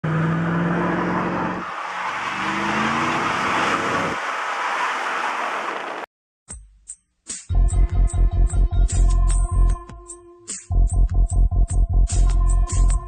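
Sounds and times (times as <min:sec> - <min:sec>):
car engine revving high: 0:00.0 - 0:04.4.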